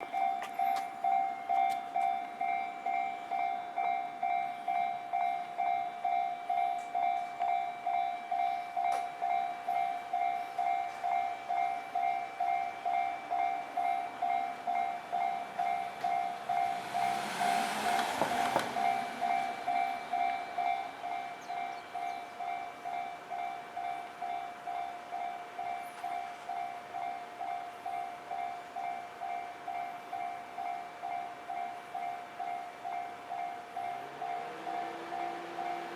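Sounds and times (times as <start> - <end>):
electronic level-crossing bell: 0.0 - 35.9
train rushing past: 13.8 - 23.0, 33.3 - 35.9.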